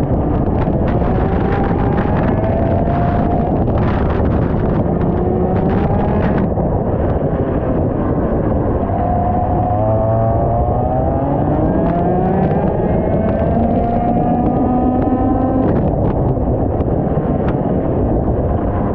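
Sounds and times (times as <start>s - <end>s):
wind buffeting microphone: 0.0s - 18.9s
kart engine revving: 8.8s - 15.9s.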